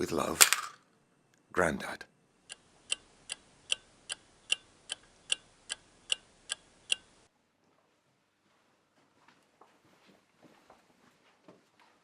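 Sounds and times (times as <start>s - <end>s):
clock ticking: 2.4s - 7.3s.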